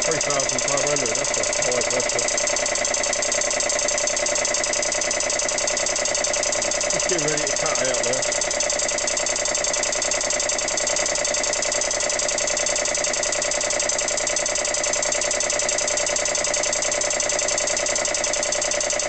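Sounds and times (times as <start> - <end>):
air compressor pulsing: 0.0 - 19.0.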